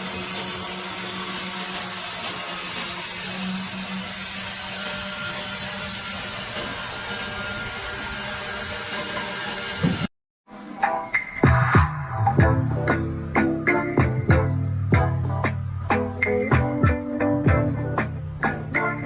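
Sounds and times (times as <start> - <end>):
woodworking power tool running: 0.0 - 10.1.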